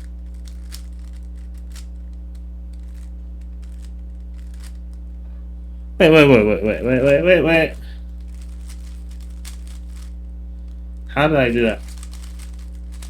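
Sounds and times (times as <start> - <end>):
puzzle cube clicking: 0.0 - 2.0, 2.7 - 4.8, 11.8 - 13.0
electrical hum: 0.0 - 13.0.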